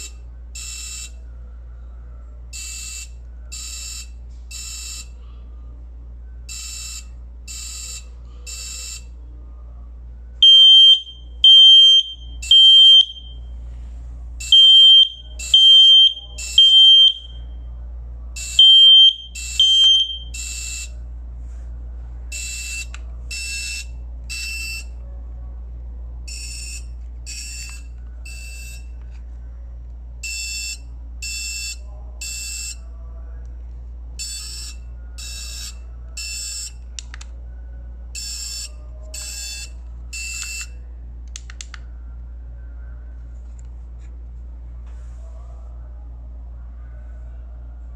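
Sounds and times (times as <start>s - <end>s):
steady low hum: 0.0s - 47.9s
fainter lower-pitched alarm beeping: 10.4s - 13.5s, 14.4s - 17.4s, 18.4s - 21.0s
loud high-pitched smoke alarm beeps: 10.4s - 13.5s, 14.4s - 17.5s, 18.4s - 20.9s, 38.2s - 40.8s.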